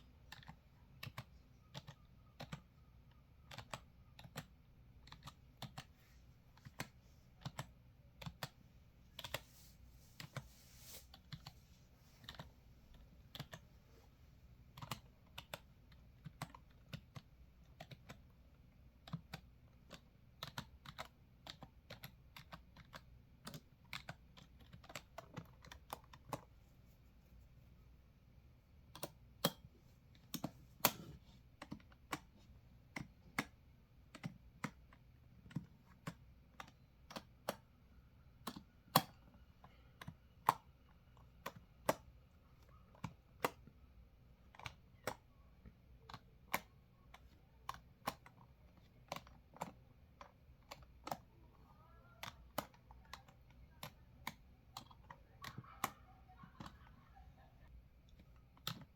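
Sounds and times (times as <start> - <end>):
keyboard keystroke clicks: 0.3 - 6.0.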